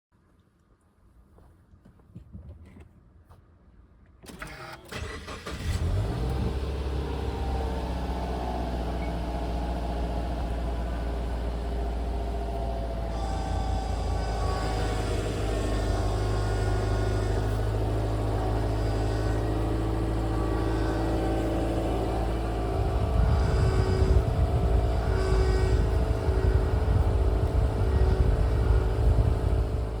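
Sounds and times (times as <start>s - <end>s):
car engine idling: 4.9s - 30.0s
uneven low rumble with tone: 6.3s - 30.0s.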